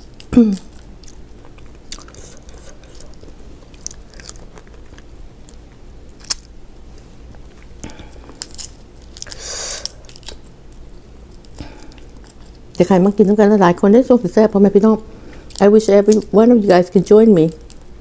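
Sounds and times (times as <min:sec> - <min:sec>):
person chewing: 0:00.1 - 0:06.5, 0:07.4 - 0:12.8.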